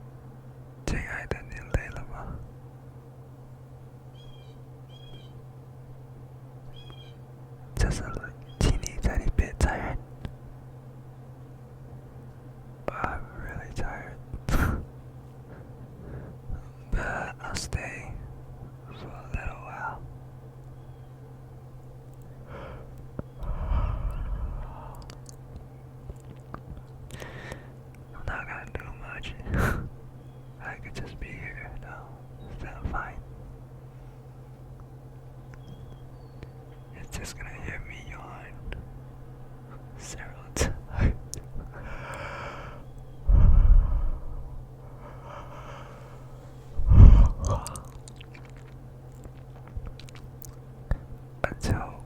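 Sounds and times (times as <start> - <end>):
man breathing into microphone: 15.5 - 17.1, 22.5 - 25.0, 27.2 - 27.8, 40.9 - 47.7.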